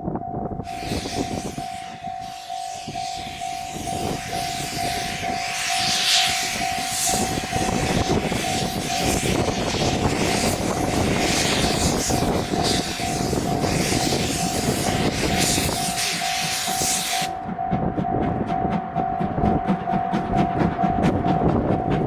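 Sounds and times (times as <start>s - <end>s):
crossing warning bell dinging: 0.0s - 11.3s, 11.9s - 22.0s
train rumble: 0.0s - 22.0s
steam hissing: 0.6s - 17.4s.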